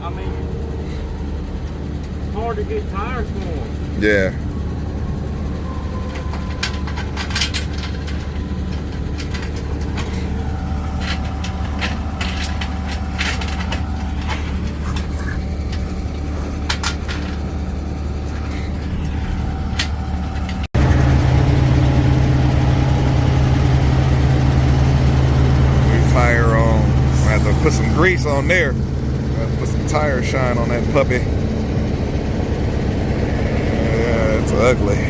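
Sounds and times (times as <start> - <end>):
truck engine idling: 0.0 - 35.0
clanks and knocks on wheel: 5.6 - 20.7.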